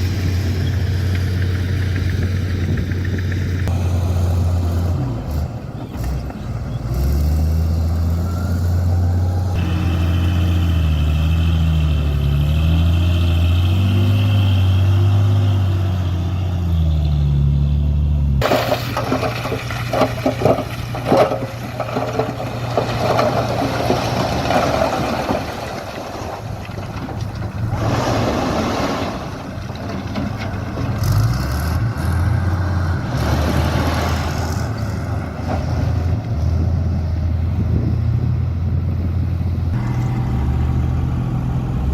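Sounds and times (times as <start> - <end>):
diesel truck engines running: 0.0 - 41.9
rattling and clattering: 18.4 - 31.9.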